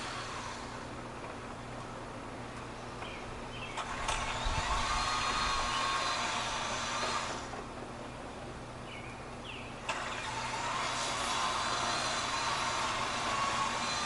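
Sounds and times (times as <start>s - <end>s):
electric motor whining: 3.8s - 7.7s, 9.8s - 14.0s.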